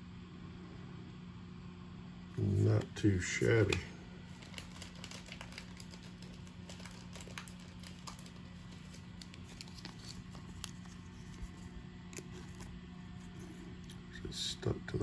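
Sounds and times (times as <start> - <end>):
steady low hum: 0.0 - 15.0
cardboard cards clicking and rustling: 3.4 - 14.0.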